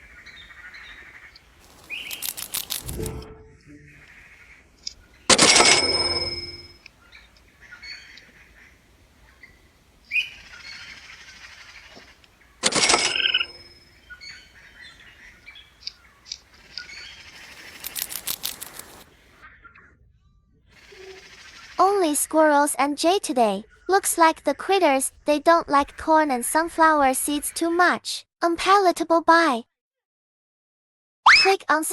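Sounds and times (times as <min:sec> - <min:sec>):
bird chirps: 0:00.0 - 0:08.6, 0:09.2 - 0:21.8
bird clicks: 0:01.3 - 0:03.1, 0:15.8 - 0:19.0.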